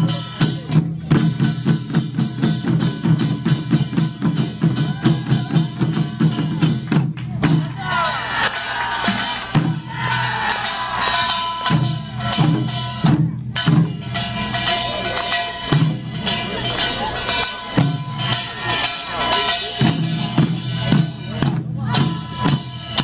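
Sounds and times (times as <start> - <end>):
drums beating heavy strokes: 0.0 - 23.0
ringing gongs: 8.1 - 21.4.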